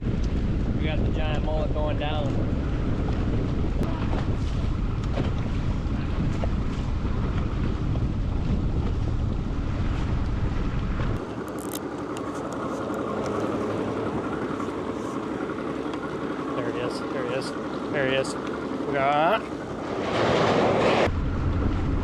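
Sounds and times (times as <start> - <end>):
wind buffeting the microphone: 0.0 - 16.6
wind and water rushing: 0.1 - 22.0.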